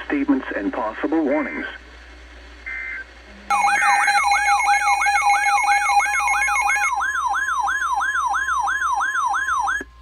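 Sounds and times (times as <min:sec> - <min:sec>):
rapid rising siren sweep: 0:03.5 - 0:09.8
steady alarm tone: 0:03.5 - 0:09.8.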